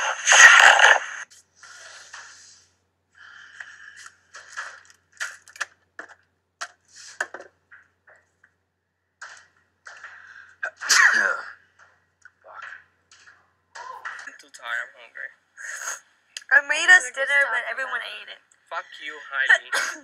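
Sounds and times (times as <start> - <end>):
clicks and rustles of movement: 4.0 - 8.5.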